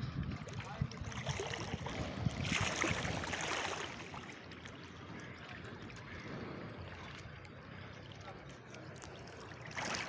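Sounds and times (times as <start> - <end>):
flowing river water: 0.0 - 10.0.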